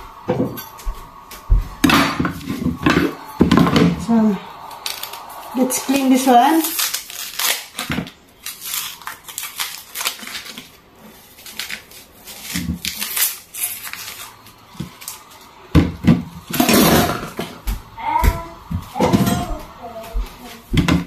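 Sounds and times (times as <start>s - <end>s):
onion skin crackling: 6.2s - 15.5s.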